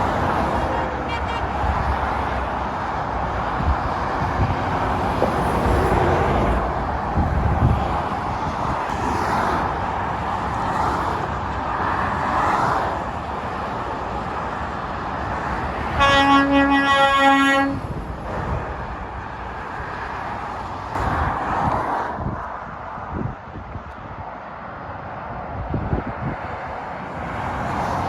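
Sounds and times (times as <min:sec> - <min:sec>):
motorway traffic passing: 0:00.0 - 0:28.0
truck air horn blasts: 0:00.6 - 0:02.0, 0:15.9 - 0:17.9.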